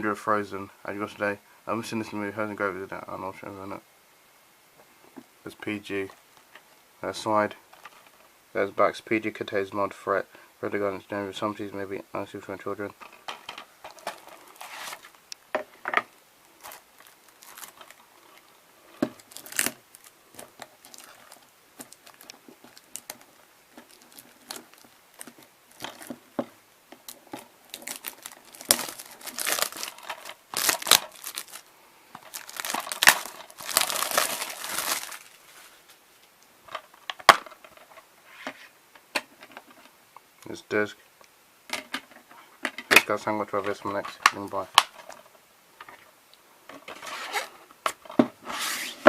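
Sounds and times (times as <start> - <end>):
plastic wrapping crinkling and tearing: 13.8 - 15.2, 16.4 - 26.4, 27.0 - 35.8.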